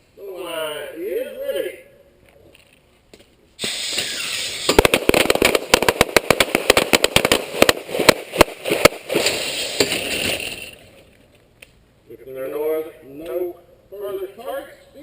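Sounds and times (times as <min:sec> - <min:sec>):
steady rushing noise: 0:03.8 - 0:10.0
pistols firing rapid shots: 0:04.0 - 0:10.1.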